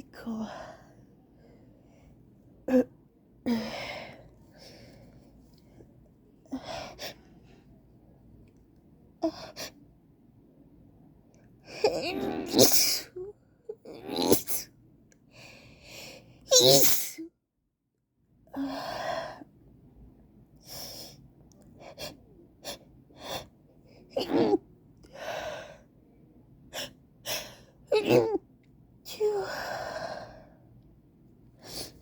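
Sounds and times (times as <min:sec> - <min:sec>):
woman sneezing: 0:16.5 - 0:17.2.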